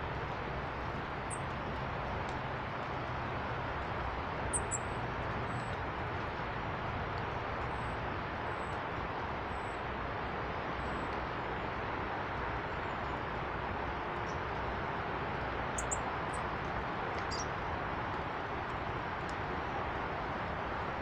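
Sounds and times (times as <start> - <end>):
small birds chirping: 4.5 - 5.8, 15.8 - 16.4, 17.2 - 17.5.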